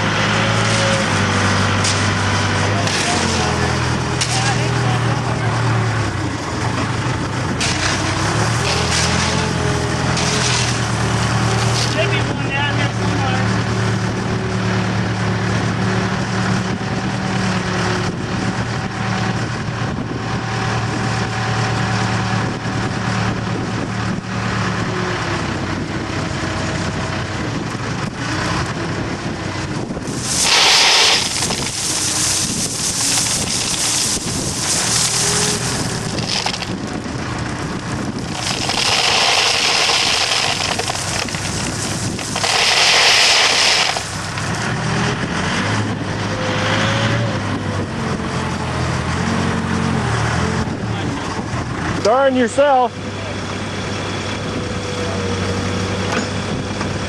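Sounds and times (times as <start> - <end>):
heavy machinery engine running: 0.0 - 57.0
loud rushing noise: 29.8 - 45.7.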